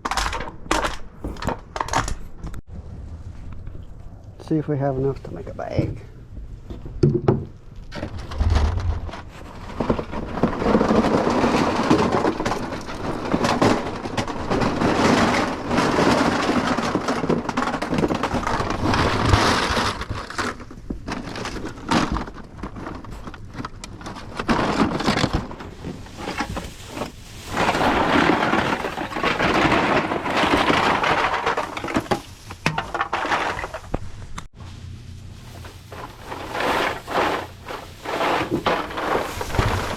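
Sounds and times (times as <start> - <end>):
aluminum cans clattering: 21.0 - 33.9, 35.5 - 39.9.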